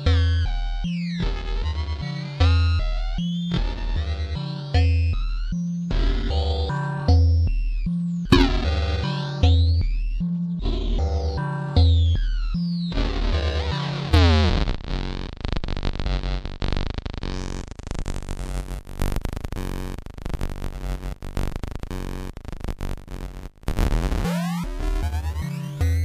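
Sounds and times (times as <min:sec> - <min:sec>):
falling synth pitch sweep: 0:08.3 - 0:08.9
glitchy stuttering synth: 0:08.3 - 0:08.9
low synth bass notes: 0:08.3 - 0:09.6.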